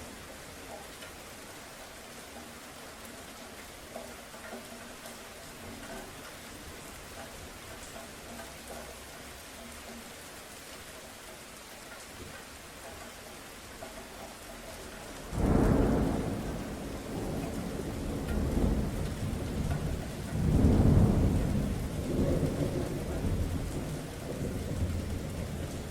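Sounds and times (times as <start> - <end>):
rain falling: 0.0 - 25.9
rolling thunder: 15.3 - 25.9.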